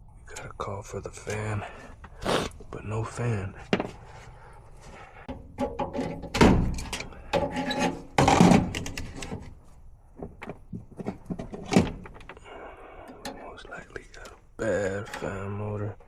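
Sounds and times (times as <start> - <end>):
knocks and thuds of metal panels: 5.3 - 9.6, 10.2 - 12.4.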